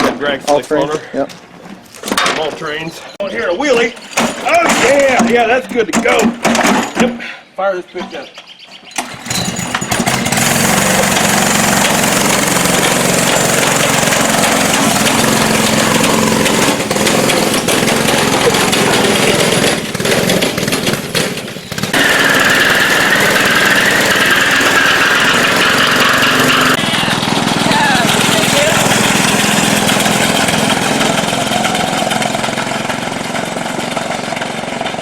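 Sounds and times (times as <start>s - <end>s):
lawn mower engine running: 8.8s - 35.0s.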